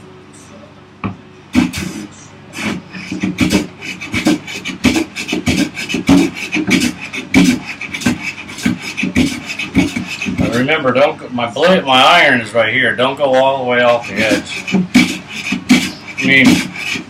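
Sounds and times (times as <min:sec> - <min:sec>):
hand plane shaving wood: 0:01.6 - 0:10.7, 0:13.8 - 0:17.0.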